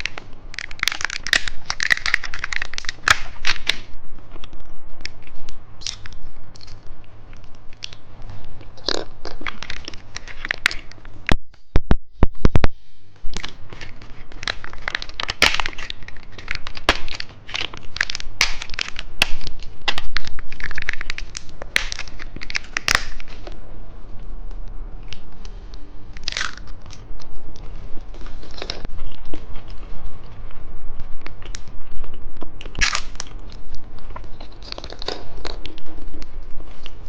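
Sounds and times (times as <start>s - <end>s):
wrapper crinkling and tearing: 0.0s - 8.0s, 8.6s - 11.0s, 13.4s - 23.6s, 26.1s - 30.2s, 32.6s - 37.0s
candy crunching: 0.0s - 11.2s, 13.2s - 23.7s, 24.5s - 37.0s.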